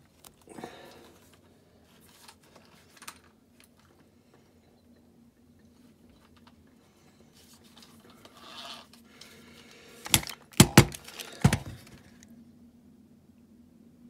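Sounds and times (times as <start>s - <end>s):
metal parts clicking and knocking: 10.0s - 12.0s.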